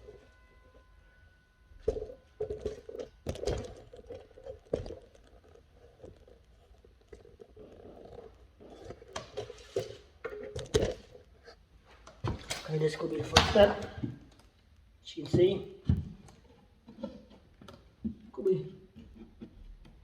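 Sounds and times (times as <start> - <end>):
wooden pieces knocking and scraping: 15.3 - 18.2.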